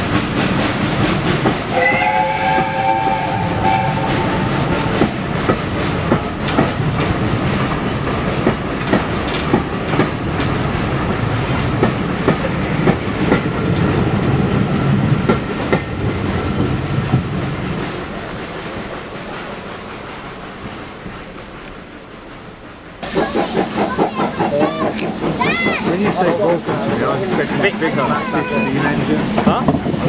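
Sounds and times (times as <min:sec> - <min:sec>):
train rumbling past: 0:00.0 - 0:30.0
wheels clicking over rail joints: 0:05.0 - 0:13.9, 0:23.0 - 0:30.0.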